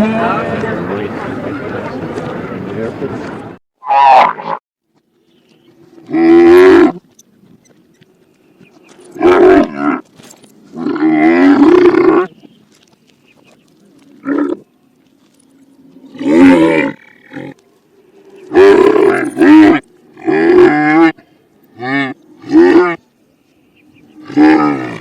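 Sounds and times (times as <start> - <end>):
reversed camel groaning calls: 10.7 - 12.4, 15.7 - 23.1, 23.7 - 25.0.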